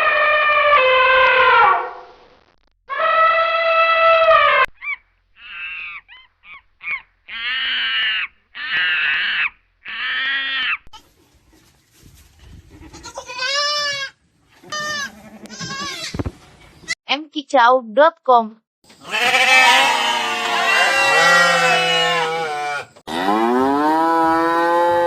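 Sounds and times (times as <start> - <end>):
goats bleating: 12.9 - 16.2, 19.0 - 23.0.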